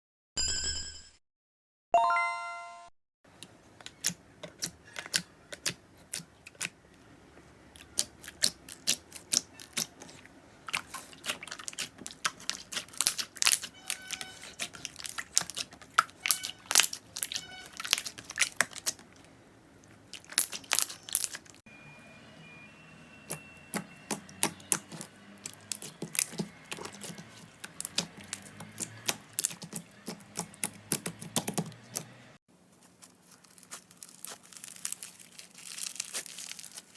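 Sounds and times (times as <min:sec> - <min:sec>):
slime crackling and popping: 0:07.8 - 0:19.2, 0:19.9 - 0:21.6, 0:23.7 - 0:32.0, 0:32.9 - 0:36.9.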